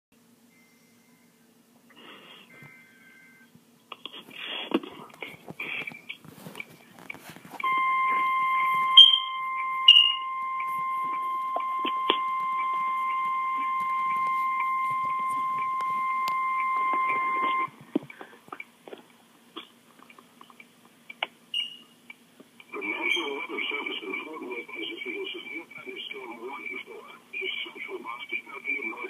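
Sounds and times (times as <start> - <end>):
short high chirps: 7.6 - 17.7
steady single-pitch alert tone: 7.6 - 17.8.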